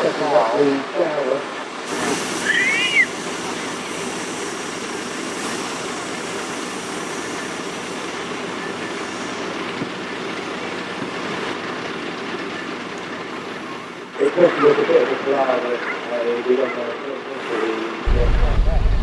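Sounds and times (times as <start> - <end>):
fire hose water spray rushing: 0.0 - 12.4.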